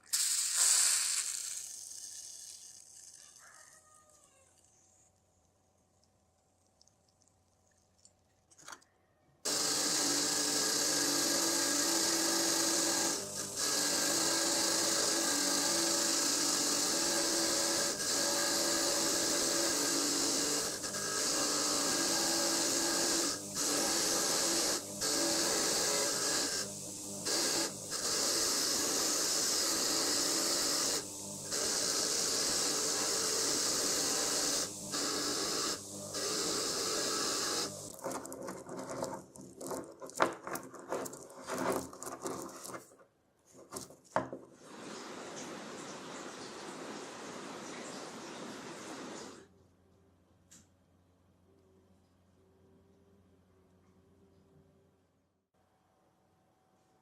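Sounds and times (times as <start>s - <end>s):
power tool grinding: 9.5s - 43.0s.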